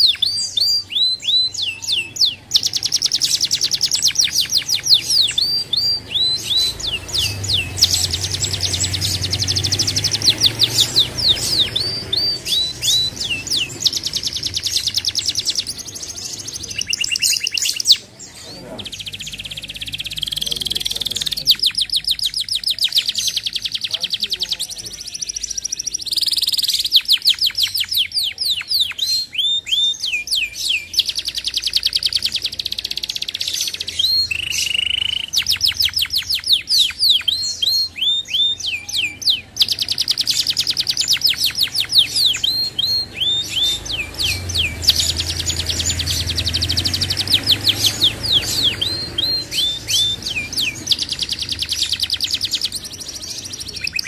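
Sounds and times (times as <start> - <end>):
canary singing trills: 0.0 - 54.0.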